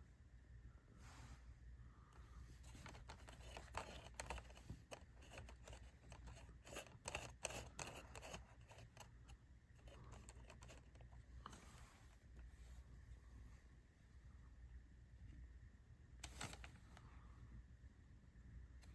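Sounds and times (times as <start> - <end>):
packaging clicks taps and rustles: 2.7 - 9.1, 9.8 - 11.1.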